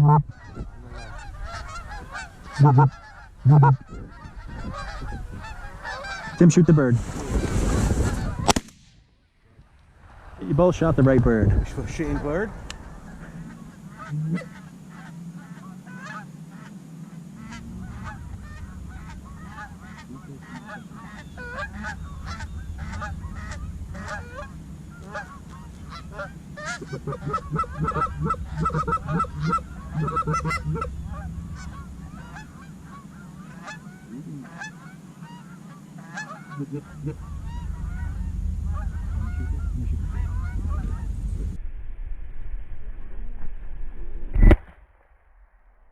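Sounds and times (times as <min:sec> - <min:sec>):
geese honking: 0:00.0 - 0:08.6, 0:10.5 - 0:41.6
low rumble: 0:00.0 - 0:45.9.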